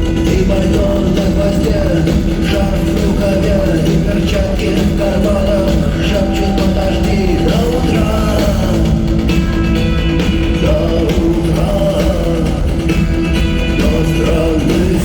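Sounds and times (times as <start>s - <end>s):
rock band playing live: 0.0s - 15.0s.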